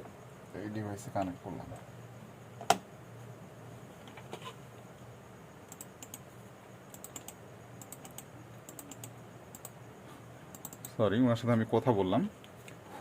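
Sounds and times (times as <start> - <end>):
keyboard keys clicking: 5.7 - 6.2, 6.9 - 9.8, 10.6 - 10.9.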